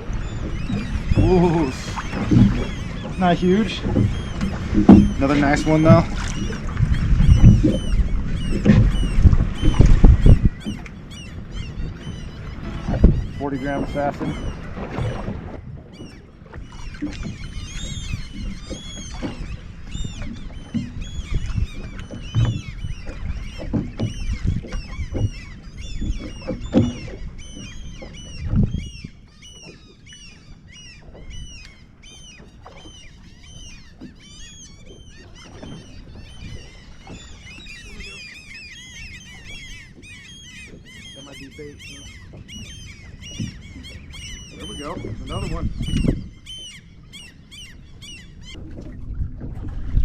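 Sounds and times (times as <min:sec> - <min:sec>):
low rumble with knocks: 0:00.0 - 0:13.4, 0:14.2 - 0:29.1, 0:48.4 - 0:50.0
seabirds calling: 0:00.0 - 0:50.0.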